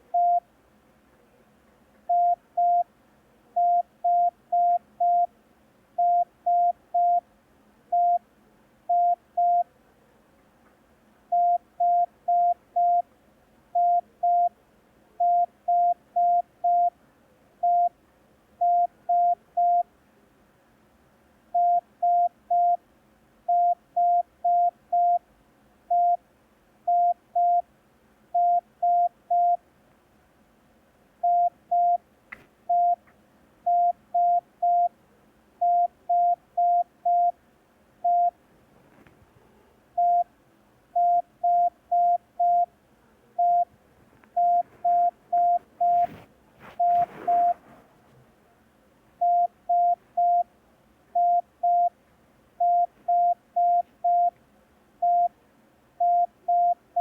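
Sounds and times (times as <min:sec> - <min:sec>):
morse code beeps: 0:02.1 - 0:02.8, 0:03.6 - 0:05.3, 0:08.9 - 0:09.6, 0:32.7 - 0:33.0, 0:38.1 - 0:38.3, 0:41.0 - 0:42.7, 0:43.4 - 0:43.7, 0:44.4 - 0:46.2, 0:46.8 - 0:47.6, 0:49.2 - 0:50.4, 0:51.2 - 0:51.9, 0:52.6 - 0:54.3.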